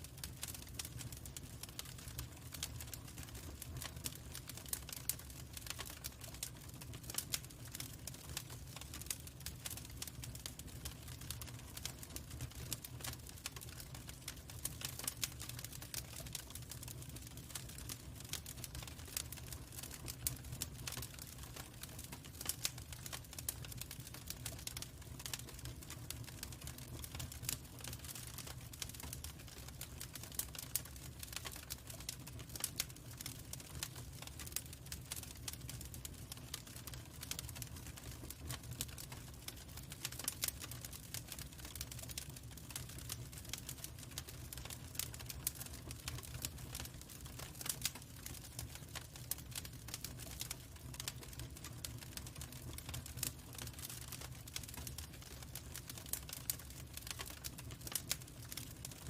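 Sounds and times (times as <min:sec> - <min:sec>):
log fire crackling: 0:00.0 - 0:59.0.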